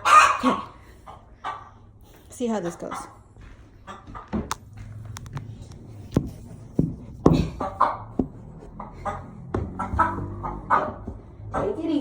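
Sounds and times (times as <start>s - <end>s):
sharp knocks and scuffs: 3.4s - 11.5s.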